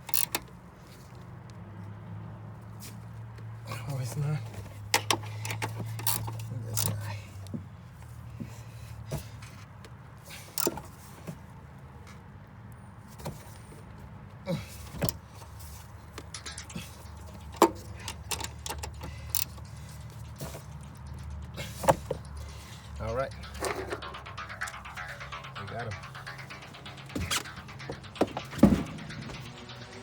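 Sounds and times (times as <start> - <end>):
metal tool clicks and knocks: 16.2 - 22.4
steady low hum: 18.6 - 30.0.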